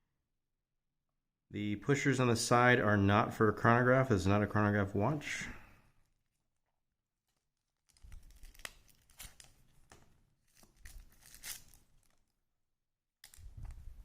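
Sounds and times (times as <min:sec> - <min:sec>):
plastic wrapping crinkling: 0:07.2 - 0:12.5, 0:13.2 - 0:14.0.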